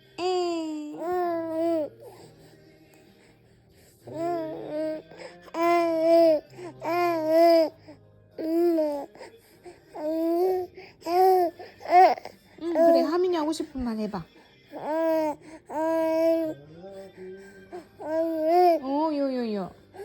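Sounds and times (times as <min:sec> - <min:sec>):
faint music: 0:00.0 - 0:20.0
baby wailing: 0:00.2 - 0:02.0, 0:04.1 - 0:07.7, 0:10.0 - 0:13.2, 0:14.8 - 0:16.6, 0:18.0 - 0:18.9.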